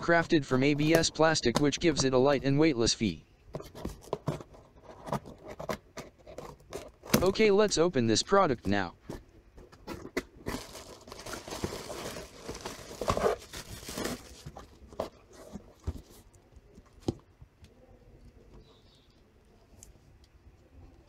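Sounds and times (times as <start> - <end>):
packaging crinkling and tearing: 9.8 - 14.8.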